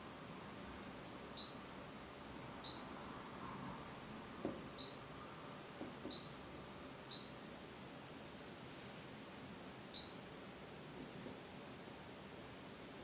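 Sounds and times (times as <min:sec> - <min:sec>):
washer-dryer control panel beeps: 0:06.1 - 0:06.4.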